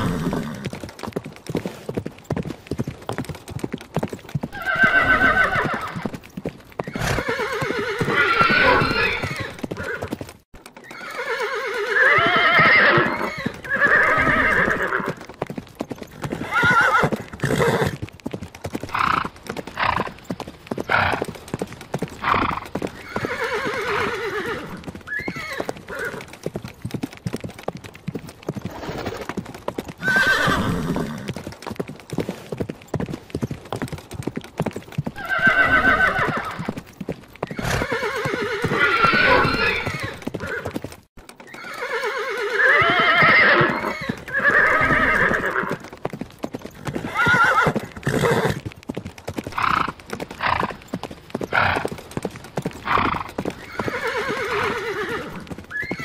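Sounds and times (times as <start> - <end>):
horses whinnying: 0.0 - 0.8, 4.5 - 15.4, 16.0 - 18.0, 18.8 - 26.5, 28.5 - 31.4, 35.1 - 36.8, 37.4 - 46.0, 46.6 - 48.6, 49.5 - 52.0, 52.6 - 56.0
clatter of hoofbeats: 0.0 - 56.0.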